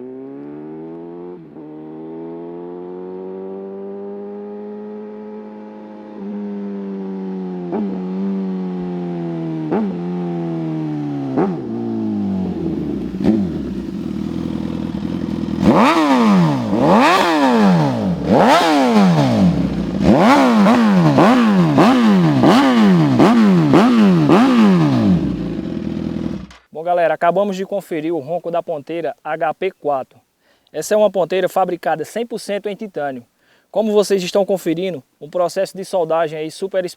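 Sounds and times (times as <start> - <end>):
motorcycle engine revving: 0.0 - 26.7
exhaust pops: 26.2 - 26.7.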